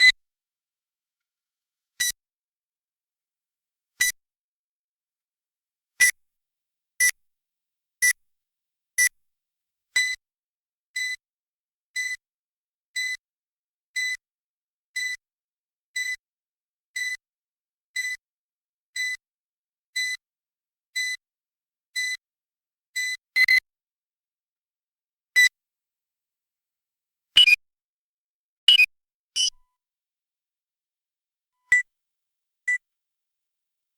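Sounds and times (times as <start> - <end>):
metal detector wand beeping: 29.4 - 29.6.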